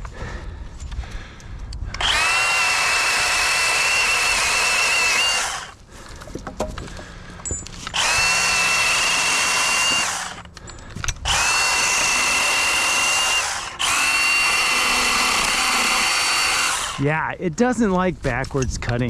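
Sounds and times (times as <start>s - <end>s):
battery pruning saw whining: 1.8s - 5.9s, 7.0s - 17.2s.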